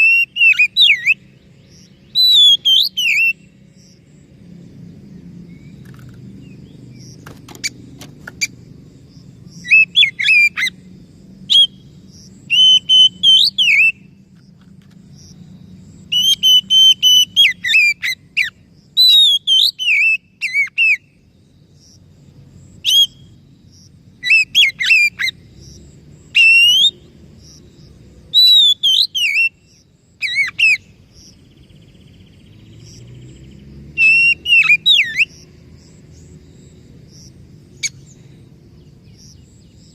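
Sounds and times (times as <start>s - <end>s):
bird singing whistled phrases: 0.0s - 1.2s, 2.1s - 3.4s, 9.6s - 10.8s, 11.5s - 11.8s, 12.5s - 14.1s, 16.1s - 21.2s, 22.8s - 23.4s, 26.4s - 27.0s, 28.4s - 29.6s, 34.0s - 35.4s.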